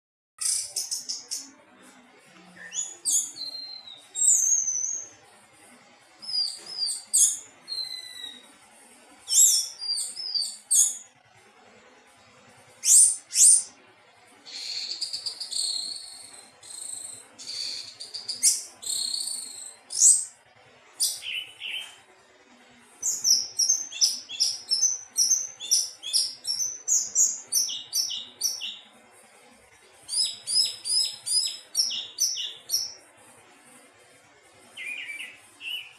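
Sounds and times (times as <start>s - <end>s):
thrush singing whistled phrases: 2.6s - 5.1s, 6.2s - 8.5s, 9.3s - 11.0s, 12.8s - 13.7s, 14.5s - 20.3s, 21.0s - 22.0s, 23.0s - 28.8s, 30.1s - 33.0s, 34.8s - 35.9s.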